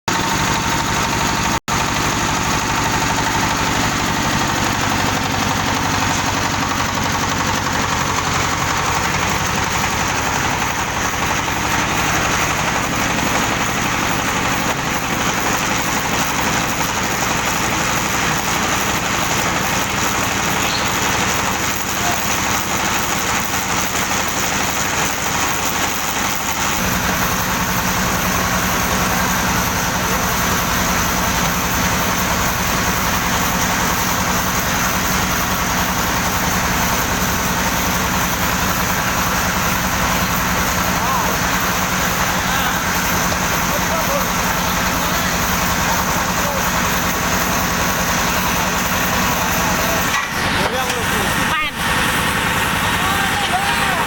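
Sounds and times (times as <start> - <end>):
concrete mixer engine running: 0.1 - 54.0.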